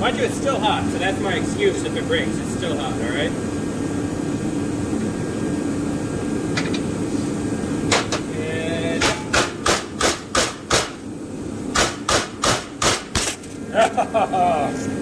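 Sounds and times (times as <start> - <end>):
hammer striking metal plate: 9.0 - 11.0, 11.7 - 13.4.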